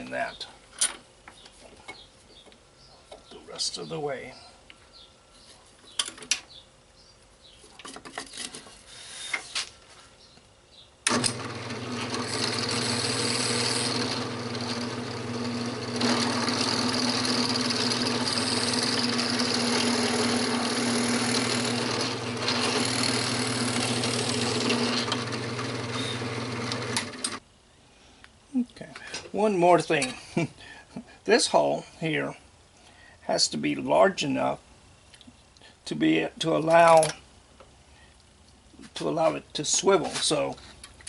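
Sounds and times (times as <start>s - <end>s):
electric drill boring through wood: 11.1s - 27.4s.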